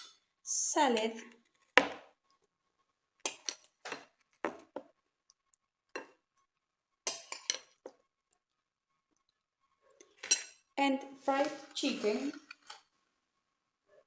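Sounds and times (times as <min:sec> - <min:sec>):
utensils clinking on a plate: 0:10.1 - 0:10.6, 0:11.4 - 0:12.9.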